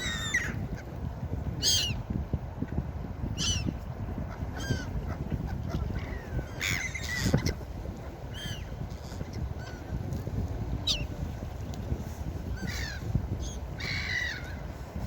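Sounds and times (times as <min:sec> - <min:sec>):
gulls calling: 0:00.0 - 0:00.9, 0:03.4 - 0:09.9, 0:12.5 - 0:14.7.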